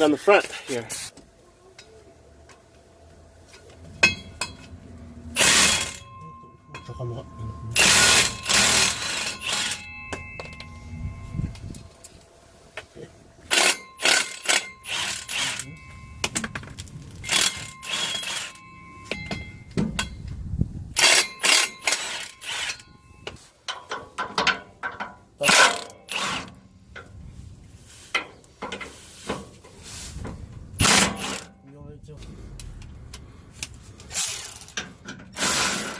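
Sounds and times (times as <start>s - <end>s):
ratchet wrench clicking: 13.5s - 15.6s, 33.6s - 35.9s.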